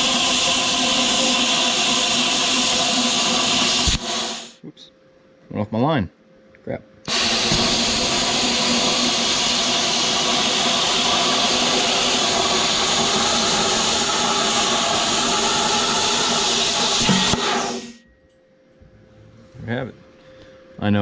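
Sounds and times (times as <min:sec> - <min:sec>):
plasma cutter hissing: 0:00.0 - 0:04.6, 0:07.1 - 0:18.0.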